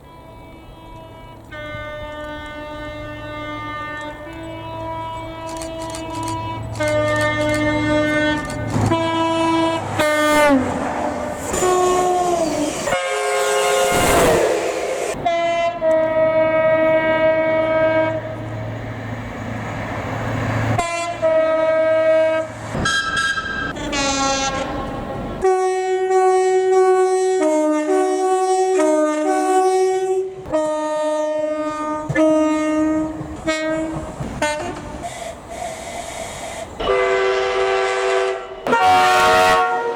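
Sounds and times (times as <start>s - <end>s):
train horn blasts: 0.0s - 10.8s, 11.5s - 14.5s, 15.1s - 18.4s, 20.8s - 35.1s, 36.8s - 39.9s
train rushing past: 1.8s - 25.6s, 31.7s - 39.9s.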